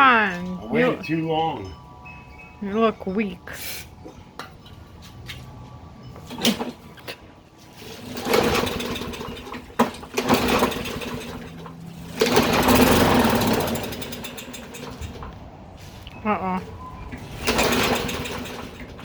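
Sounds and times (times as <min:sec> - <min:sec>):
lawn mower pull-start: 0:06.2 - 0:16.1, 0:17.0 - 0:19.0
lawn mower engine surging: 0:07.6 - 0:19.0.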